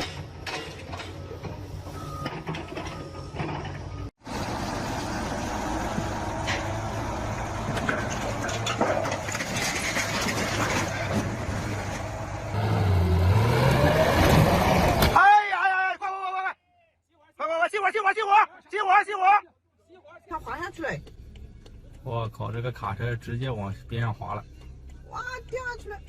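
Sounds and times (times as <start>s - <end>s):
outdoor noise: 0.0s - 26.0s
heavy vehicle engine running: 0.3s - 15.1s.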